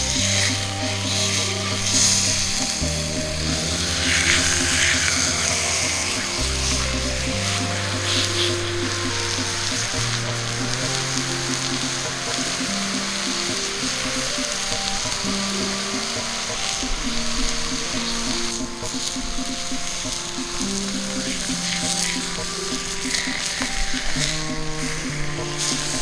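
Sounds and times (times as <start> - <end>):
steak sizzling: 0.0 - 26.0.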